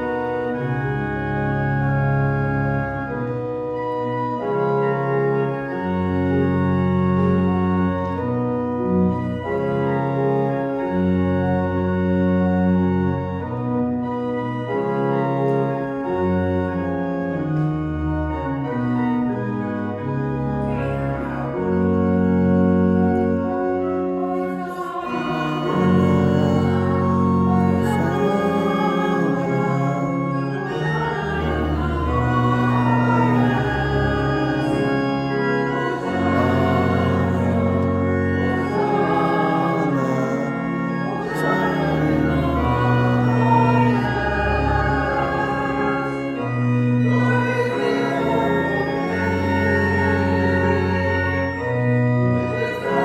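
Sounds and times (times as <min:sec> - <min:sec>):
organ playing a hymn: 0:00.0 - 0:53.0
group of voices singing: 0:24.4 - 0:51.7, 0:52.3 - 0:53.0.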